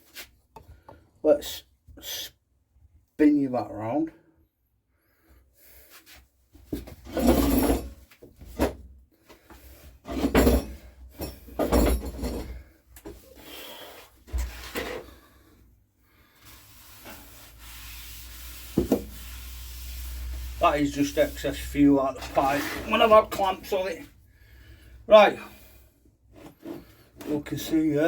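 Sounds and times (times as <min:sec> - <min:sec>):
brushing and scraping strokes: 0:16.2 - 0:23.6.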